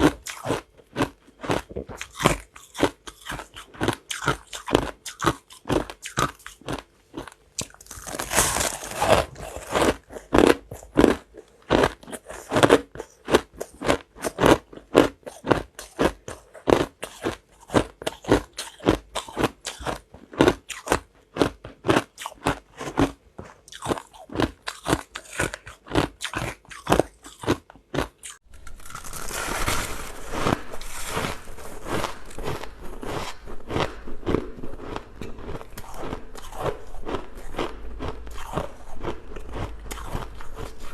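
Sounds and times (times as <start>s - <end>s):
close crunching and crackle: 0.0s - 13.0s, 23.7s - 40.9s.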